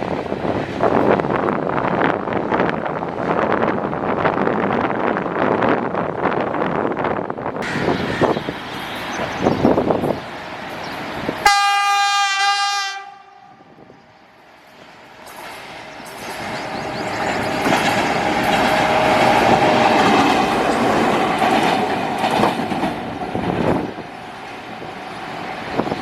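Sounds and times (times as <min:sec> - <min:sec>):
train rumbling past: 0:00.0 - 0:26.0
diesel locomotive horn blast: 0:07.6 - 0:09.0, 0:11.4 - 0:13.8
train wheels clattering on rails: 0:14.6 - 0:26.0.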